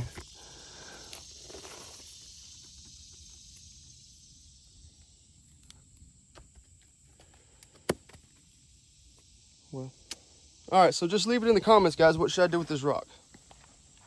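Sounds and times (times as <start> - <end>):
faint high hiss: 8.5 - 14.0.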